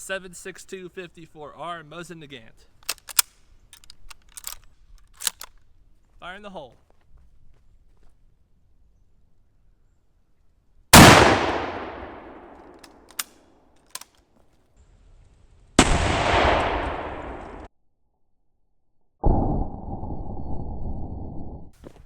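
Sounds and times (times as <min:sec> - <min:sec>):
small clicks: 0:02.8 - 0:05.7, 0:12.5 - 0:14.5
rifle shot echoing: 0:11.0 - 0:13.3, 0:15.8 - 0:17.7
loud blast: 0:15.8 - 0:17.7.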